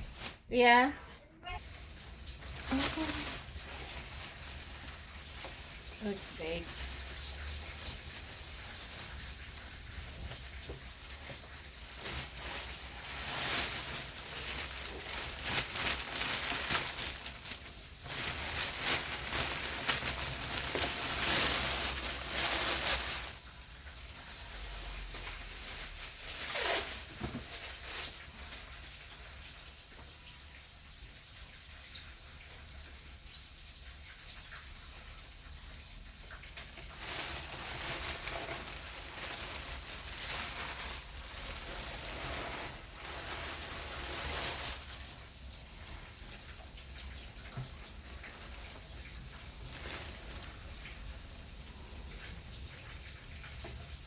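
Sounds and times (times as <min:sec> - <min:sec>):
packaging rustling: 0:00.0 - 0:00.8, 0:01.5 - 0:23.6, 0:24.2 - 0:28.7, 0:36.5 - 0:45.3, 0:47.4 - 0:51.0.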